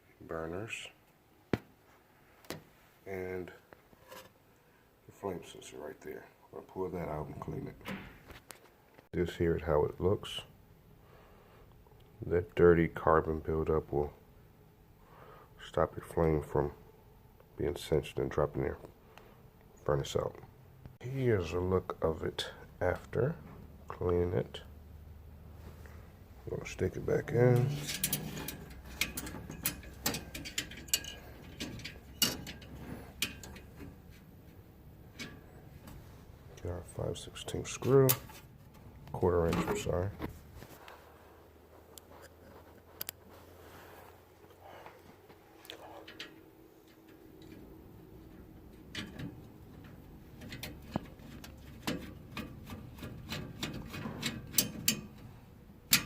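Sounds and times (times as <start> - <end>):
small metallic clicks and taps: 27.6 - 33.9.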